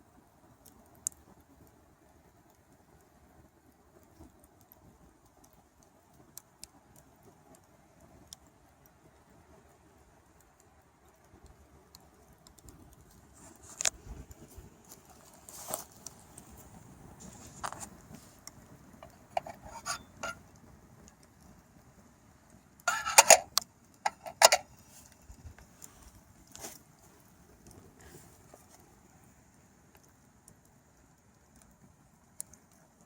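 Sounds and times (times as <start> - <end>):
metal kettle parts clinking: 19.0 - 20.4, 22.9 - 23.5, 24.1 - 24.6.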